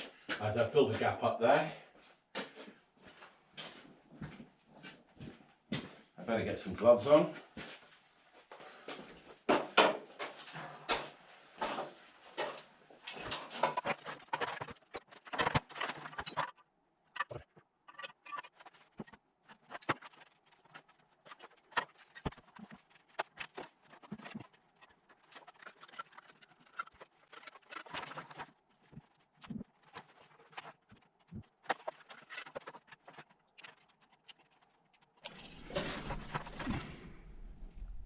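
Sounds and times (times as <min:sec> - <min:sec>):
bricklaying knocks and clicks: 0:11.6 - 0:38.0.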